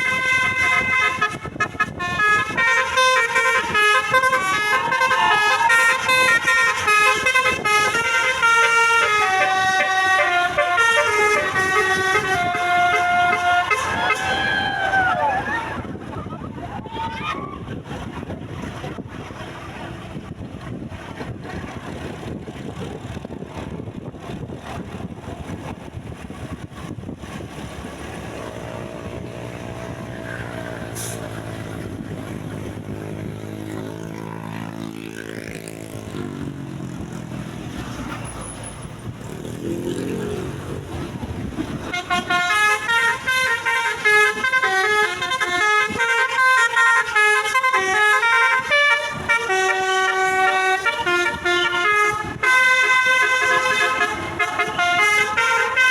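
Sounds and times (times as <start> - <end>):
multi-tone horn melody: 0.0 - 15.7, 41.8 - 55.9
bus engine revving: 0.0 - 55.9.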